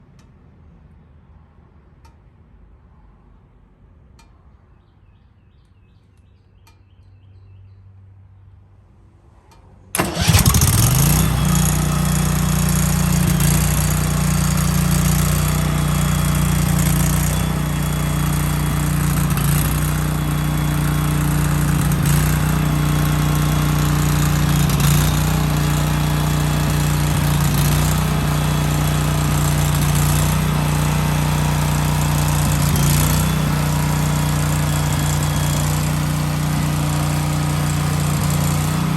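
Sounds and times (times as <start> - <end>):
generator engine starting and running: 9.9 - 38.9.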